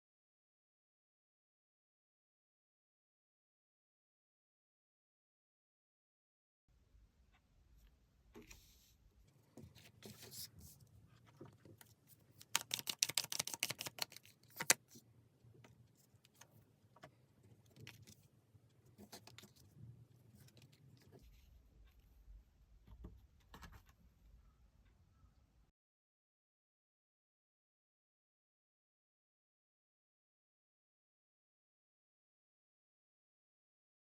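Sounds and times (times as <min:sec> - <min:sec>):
cards shuffling: 0:12.3 - 0:15.0
rapid card clicking: 0:12.4 - 0:14.8.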